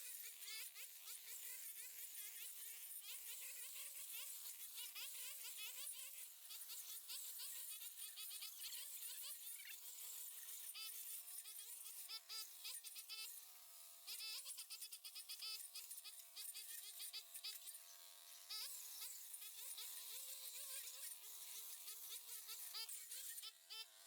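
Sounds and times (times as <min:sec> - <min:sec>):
insect buzzing whine: 0:18.6 - 0:23.9.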